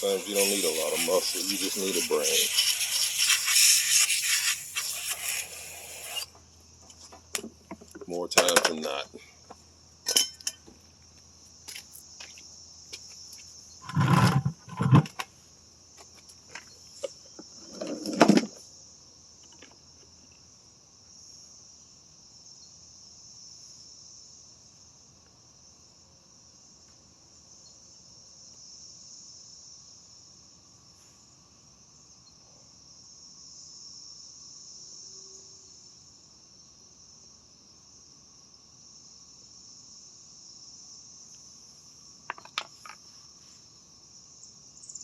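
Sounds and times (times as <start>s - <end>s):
insects chirring: 0.0s - 45.0s
tools clattering: 10.1s - 10.7s.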